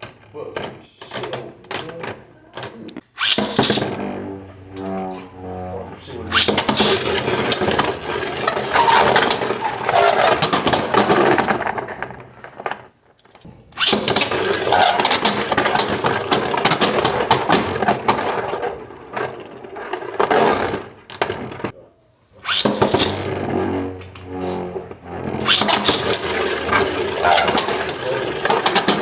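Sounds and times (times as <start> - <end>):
spinning tops clattering in plastic arena: 13.8 - 21.3, 25.4 - 29.0.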